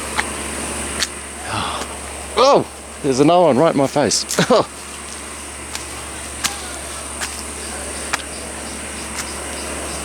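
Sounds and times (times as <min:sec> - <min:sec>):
insect hiss: 0:00.0 - 0:10.0
low steady hum: 0:00.0 - 0:10.0
footsteps on stone steps: 0:04.2 - 0:10.0.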